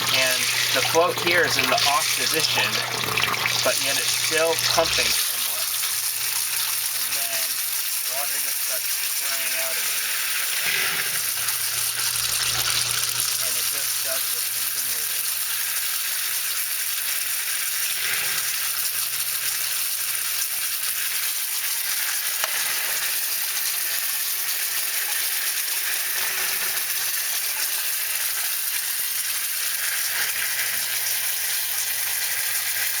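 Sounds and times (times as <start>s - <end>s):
sump pump humming: 0.0s - 16.6s
water spraying from pipe: 0.0s - 33.0s.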